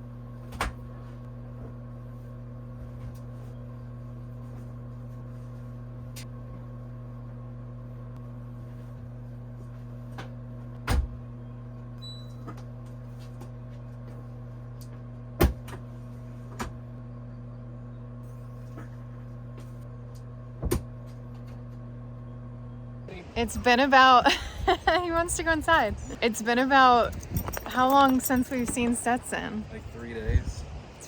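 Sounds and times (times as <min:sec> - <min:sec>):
kitchen appliance electric hum: 0:00.0 - 0:27.6.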